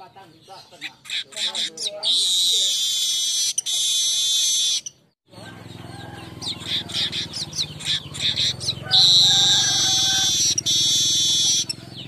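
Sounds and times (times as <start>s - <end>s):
buzzy bird chatter: 0.0s - 12.0s.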